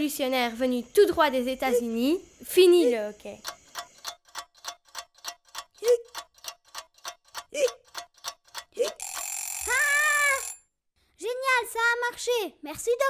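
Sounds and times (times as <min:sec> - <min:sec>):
fast clock-like ticking: 0:01.0 - 0:10.6.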